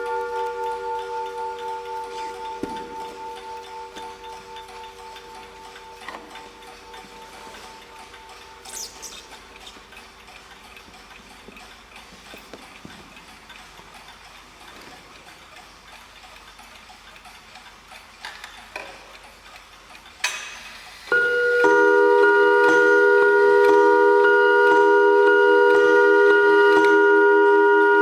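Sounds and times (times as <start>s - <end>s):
clock chiming loudly: 0.0s - 8.7s, 21.1s - 28.0s
clock strike ringing: 0.0s - 9.5s, 21.1s - 28.0s
mechanical clocks ticking: 0.0s - 28.0s.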